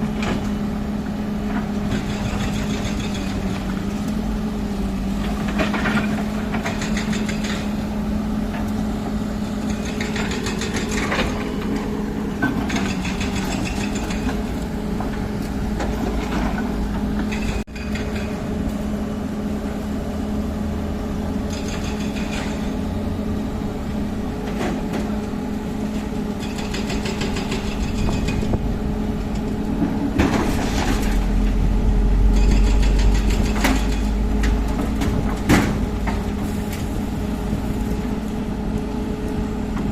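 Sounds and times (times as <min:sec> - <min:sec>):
heavy diesel engines running: 0:00.0 - 0:39.9
hiss and clatter of machinery: 0:00.1 - 0:04.2, 0:05.1 - 0:18.9, 0:21.4 - 0:22.9, 0:24.4 - 0:28.6, 0:32.3 - 0:38.3.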